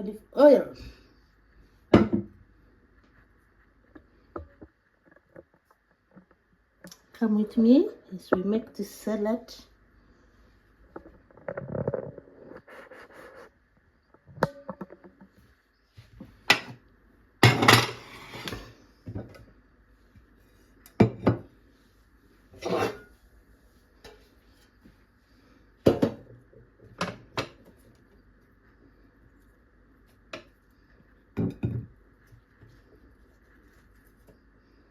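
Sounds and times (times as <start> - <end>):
dishes and cutlery clattering: 17.4 - 18.6
rustling: 32.0 - 34.9.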